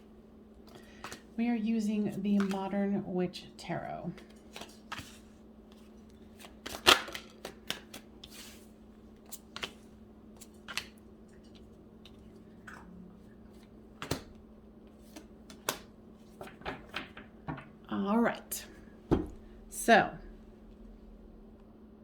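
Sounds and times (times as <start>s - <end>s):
cards being shuffled: 2.1s - 2.8s, 4.2s - 12.2s, 13.5s - 17.2s
sharp card snaps and taps: 6.4s - 8.1s, 14.0s - 14.4s, 15.1s - 16.8s.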